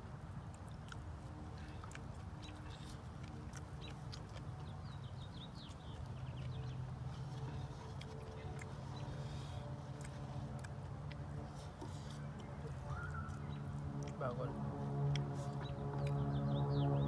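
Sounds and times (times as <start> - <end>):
low hum: 1.0 - 17.0
animal chirping: 12.8 - 13.7.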